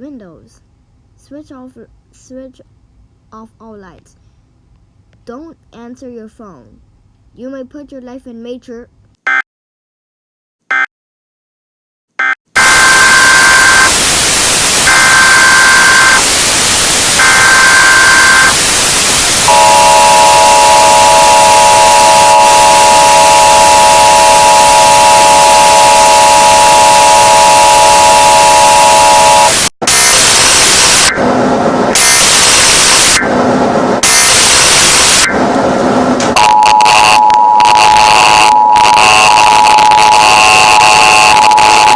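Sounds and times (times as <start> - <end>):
heavy static: 12.6 - 41.9
screeching digital data tones: 14.9 - 16.3, 17.2 - 18.6, 19.4 - 31.2, 32.0 - 33.3, 34.0 - 35.4, 36.4 - 41.9
two-tone attention signal: 19.5 - 30.1, 36.4 - 41.9.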